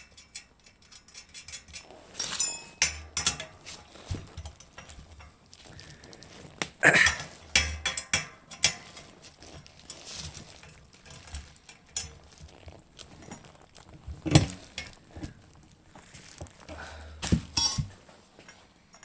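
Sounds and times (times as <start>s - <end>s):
metallic clinks of tools: 0.0s - 3.6s, 17.6s - 19.0s.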